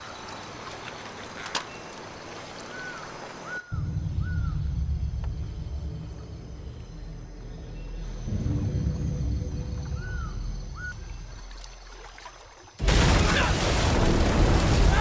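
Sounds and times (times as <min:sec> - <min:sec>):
bird calls: 0:00.0 - 0:05.4, 0:06.1 - 0:12.7
steady outdoor hiss: 0:00.0 - 0:15.0
loud deep rumble: 0:03.8 - 0:11.2.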